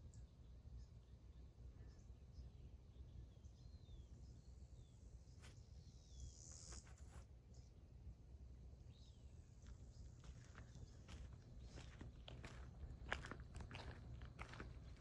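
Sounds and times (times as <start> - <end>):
faint bird chirps: 0.0 - 7.7.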